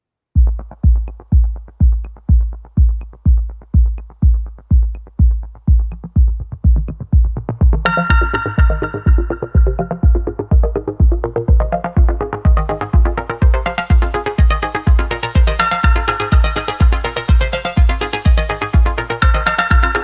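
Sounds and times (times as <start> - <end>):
deep kick drum: 0.4 - 20.0
electronic music: 0.4 - 20.0
bright synthesizer chord: 7.9 - 20.0.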